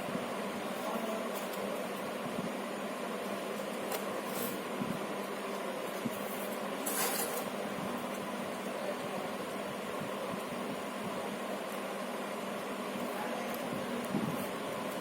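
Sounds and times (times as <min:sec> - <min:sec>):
fan-like background hiss: 0:00.0 - 0:15.0
craft sticks rustling and scraping: 0:06.2 - 0:07.5.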